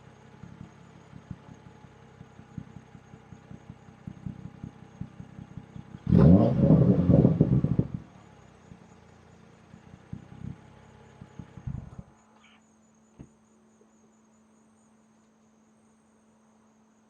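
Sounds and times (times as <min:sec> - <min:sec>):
low engine rumble: 0:00.0 - 0:13.6
crickets chirping: 0:00.0 - 0:17.0.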